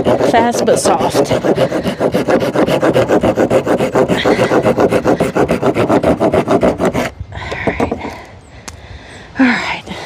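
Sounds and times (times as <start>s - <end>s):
hand saw cutting wood: 0.0s - 7.1s.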